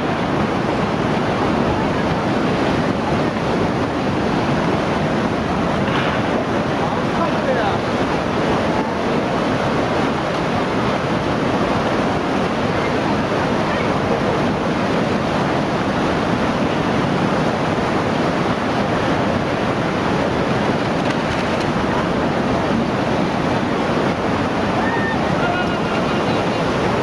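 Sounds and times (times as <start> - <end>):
floodwater rushing: 0.0 - 27.0.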